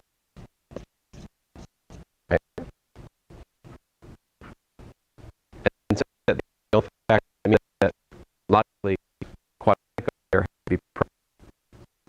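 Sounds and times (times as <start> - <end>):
garbled voice snippets: 2.3 - 2.8, 5.2 - 11.2.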